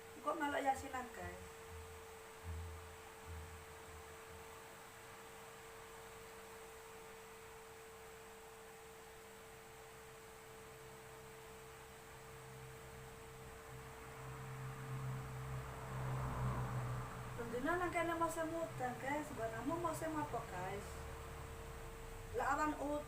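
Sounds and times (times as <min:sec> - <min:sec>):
high-pitched tone hum: 0:00.0 - 0:23.0
low hiss: 0:00.0 - 0:23.0
soft low thumps: 0:01.7 - 0:04.6.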